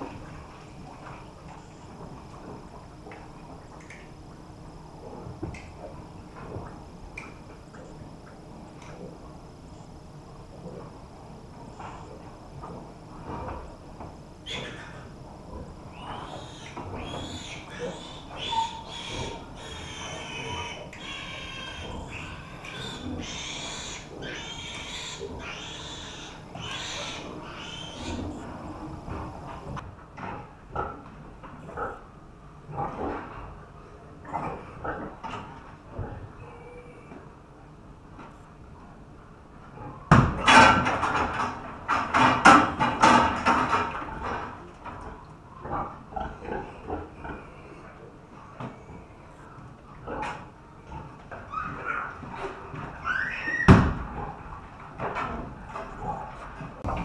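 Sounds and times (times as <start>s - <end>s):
pigs squealing: 14.4s - 15.2s, 15.8s - 29.8s, 51.0s - 53.9s.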